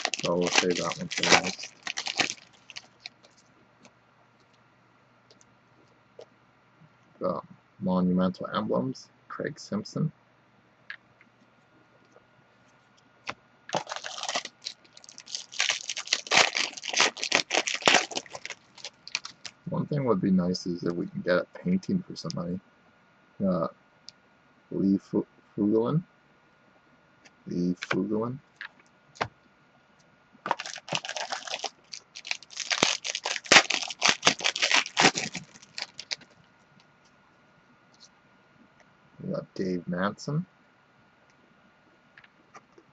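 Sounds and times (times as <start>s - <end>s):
cards and packaging crinkling: 0.0s - 3.4s, 13.7s - 19.6s, 30.5s - 36.4s
tearing and scraping: 0.0s - 3.4s, 13.7s - 19.5s, 30.5s - 36.2s.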